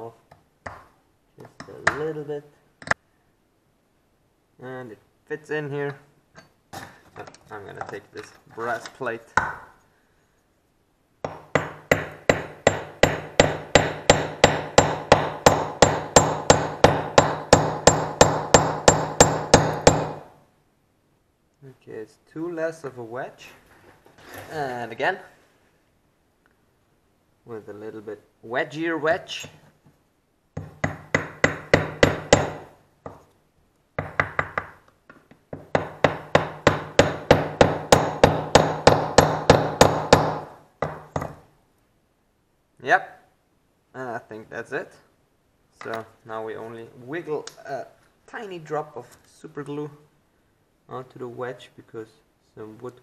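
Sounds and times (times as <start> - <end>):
hammer striking wedge into wood: 11.2 - 20.3, 30.6 - 33.2, 35.6 - 41.4.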